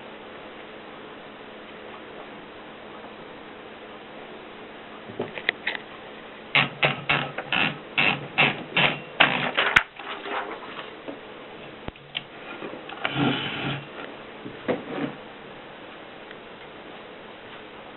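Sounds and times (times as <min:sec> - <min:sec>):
typewriter mechanical rattle: 0:06.6 - 0:10.6.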